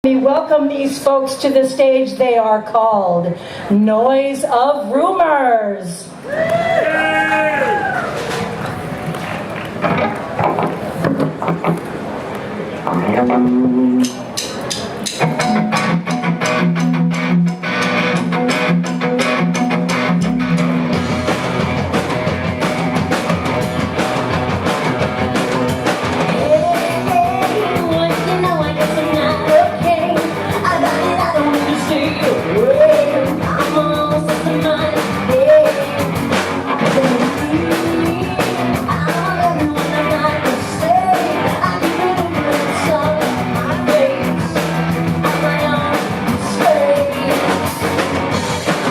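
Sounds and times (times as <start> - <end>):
live rock band playing: 6.3 - 12.2, 12.8 - 48.9
lead vocal singing: 36.8 - 48.0.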